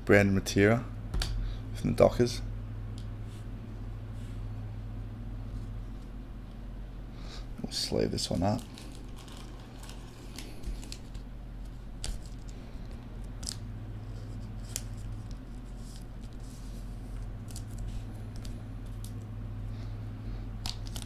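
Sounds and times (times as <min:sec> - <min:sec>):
steady low hum: 0:00.0 - 0:21.0
packaging snips and crinkles: 0:08.4 - 0:11.2, 0:20.7 - 0:21.0.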